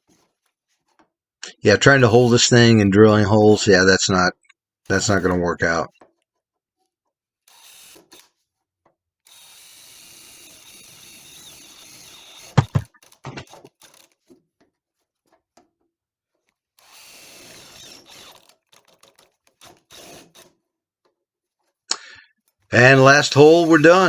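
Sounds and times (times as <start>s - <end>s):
electric drill boring through steel: 1.8s - 3.7s, 7.5s - 8.3s, 9.3s - 14.0s, 16.8s - 19.1s, 19.7s - 20.4s, 22.8s - 24.0s.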